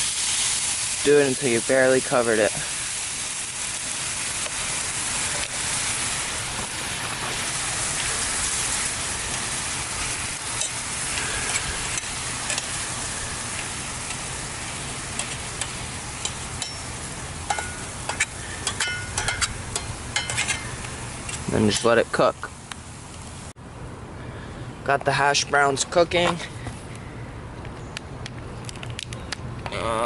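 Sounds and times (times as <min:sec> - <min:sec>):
food sizzling in a pan: 0:00.0 - 0:23.5
metal utensil scraping a pan: 0:17.5 - 0:20.8.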